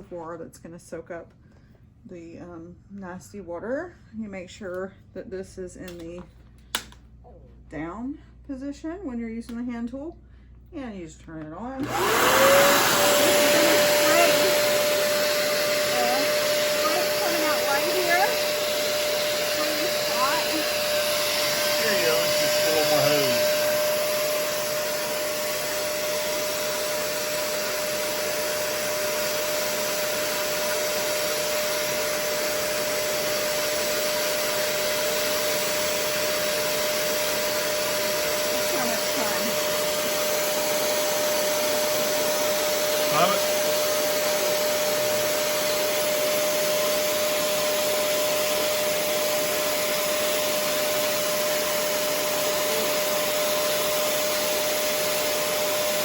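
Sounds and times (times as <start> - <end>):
carpet washer suction whine: 11.8 - 56.0.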